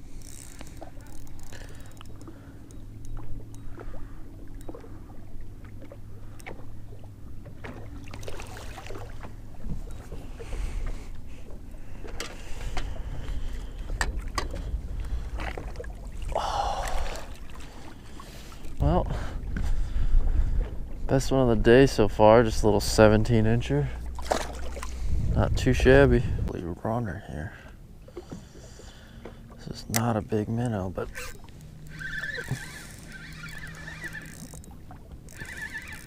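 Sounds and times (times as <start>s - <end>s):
boat low hum: 0.0s - 36.0s
wind rumbling: 12.8s - 17.6s, 24.0s - 26.6s.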